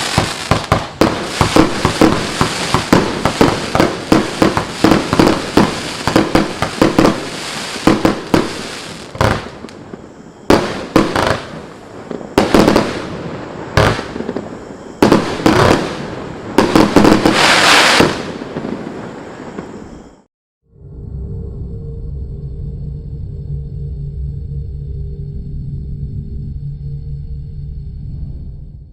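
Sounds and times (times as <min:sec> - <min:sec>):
firework battery firing: 0:00.0 - 0:19.7
firework crackling: 0:00.0 - 0:19.8.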